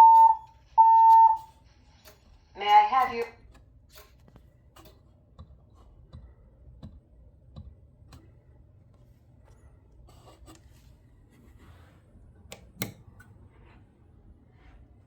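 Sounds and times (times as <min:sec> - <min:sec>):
faint clicks and taps: 0:03.0 - 0:10.7.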